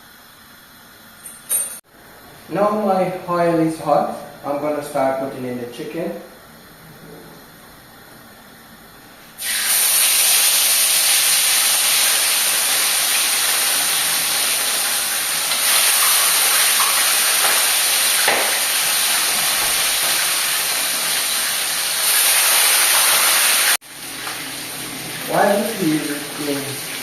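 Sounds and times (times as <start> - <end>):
chicken sizzling in hot oil: 9.4 - 27.0.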